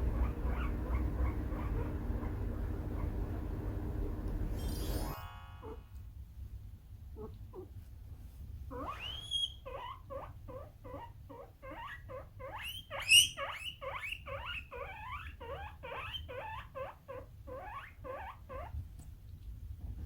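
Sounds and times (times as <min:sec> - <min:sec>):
guinea pig squealing: 0:00.0 - 0:03.3, 0:04.6 - 0:05.9, 0:07.1 - 0:07.7, 0:08.7 - 0:18.8.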